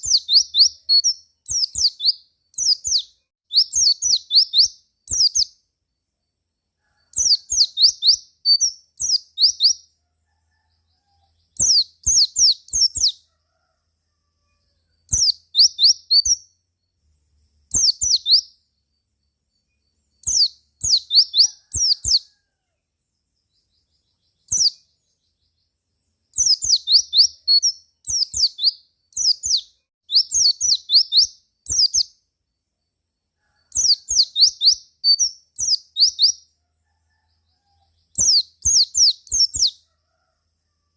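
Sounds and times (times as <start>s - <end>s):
bird chirping high falling calls: 0.0s - 5.6s, 6.9s - 13.3s, 14.4s - 16.6s, 17.7s - 18.6s, 20.1s - 22.4s, 23.5s - 25.6s, 26.3s - 32.1s, 33.6s - 36.4s, 37.1s - 39.8s.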